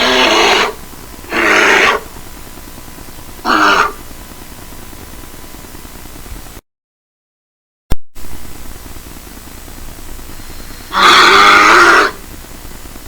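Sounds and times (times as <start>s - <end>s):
bear roaring: 0.0s - 2.1s, 3.4s - 4.0s, 10.9s - 12.2s
steady background hiss: 0.0s - 6.6s, 8.2s - 13.0s.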